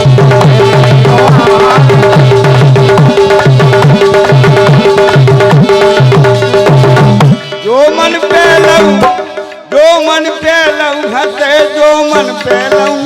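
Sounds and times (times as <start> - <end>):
hand drum strokes: 0.0 - 11.5.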